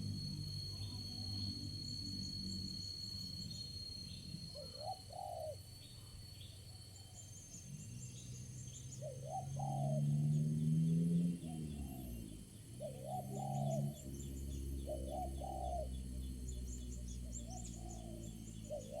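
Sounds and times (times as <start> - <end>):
low steady hum: 0.0 - 10.3
small birds chirping: 0.6 - 19.0
doves cooing: 4.6 - 5.7, 9.0 - 19.0.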